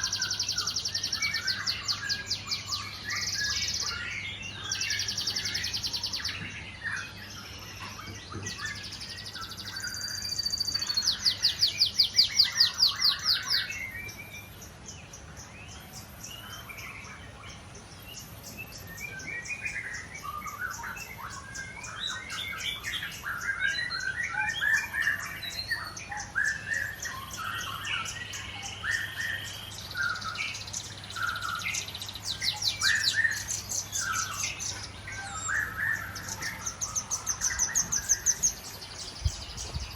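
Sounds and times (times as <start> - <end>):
songbirds chirping and singing: 0.0 - 39.9
fast rattling bird trill: 8.6 - 17.2, 18.2 - 39.9.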